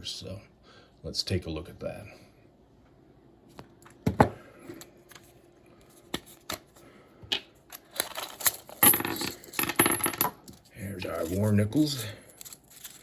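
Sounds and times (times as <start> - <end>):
coins clicking and clattering: 7.9 - 10.4.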